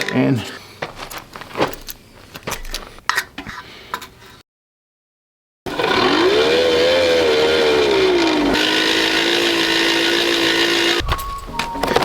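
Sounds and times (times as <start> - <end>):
handling knocks and clicks: 0.0 - 4.2, 11.0 - 12.0
hand-crank blower whining: 5.7 - 12.0.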